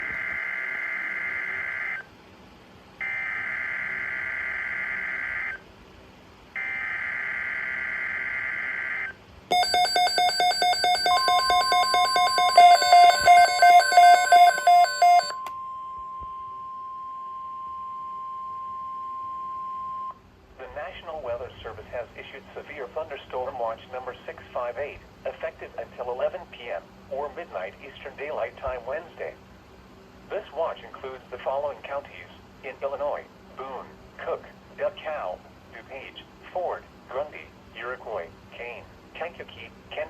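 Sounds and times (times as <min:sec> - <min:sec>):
steady warning alarm tone: 0:06.6 - 0:20.2
rapid beeping alarm: 0:09.5 - 0:15.7.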